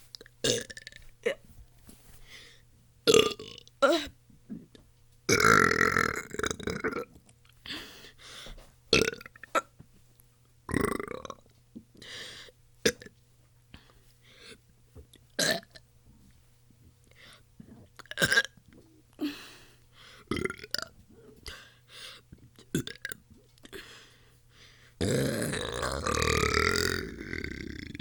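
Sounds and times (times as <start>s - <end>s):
person burping: 0.4s - 1.0s, 3.1s - 7.1s, 9.0s - 9.7s, 10.7s - 11.4s, 15.4s - 15.8s, 18.0s - 18.6s, 20.3s - 20.9s, 22.7s - 23.2s, 25.0s - 28.0s.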